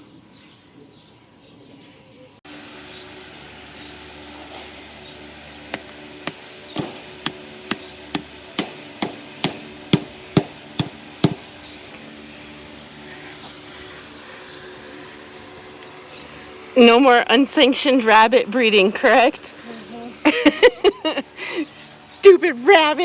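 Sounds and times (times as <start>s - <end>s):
hammer blows: 5.6s - 11.6s.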